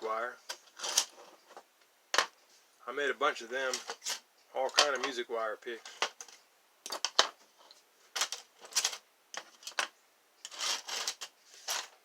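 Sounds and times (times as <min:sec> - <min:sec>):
scraping rattle of picks: 0:00.4 - 0:01.4, 0:03.6 - 0:05.2, 0:05.8 - 0:12.0.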